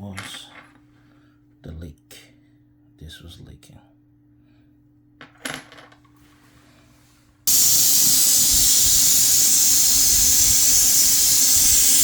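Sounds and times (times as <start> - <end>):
gas venting hiss: 7.5 - 12.0.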